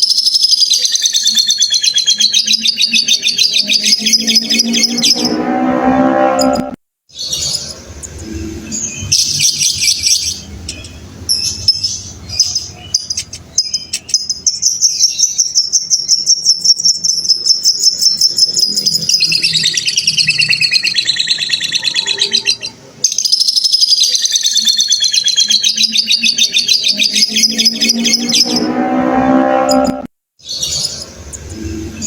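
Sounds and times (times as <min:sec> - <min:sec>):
lovebird chattering trill: 0:07.2 - 0:28.4.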